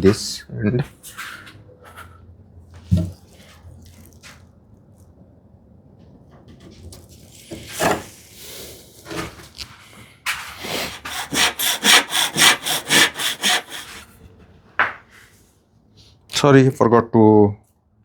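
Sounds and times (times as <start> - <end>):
hand saw cutting wood: 7.4 - 9.3, 10.5 - 14.1.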